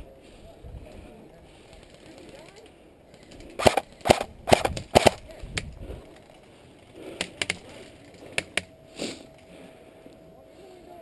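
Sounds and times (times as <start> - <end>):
airsoft gun shots: 3.6 - 5.2.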